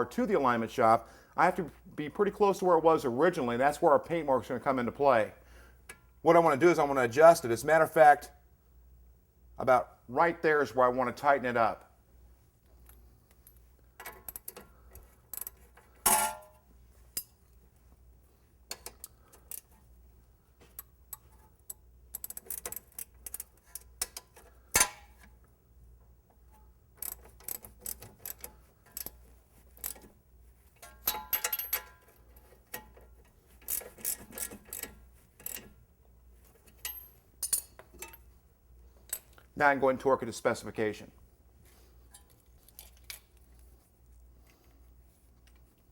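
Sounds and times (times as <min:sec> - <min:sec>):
hand ratchet clicking: 0:20.8 - 0:25.0, 0:27.0 - 0:30.1, 0:33.6 - 0:35.7.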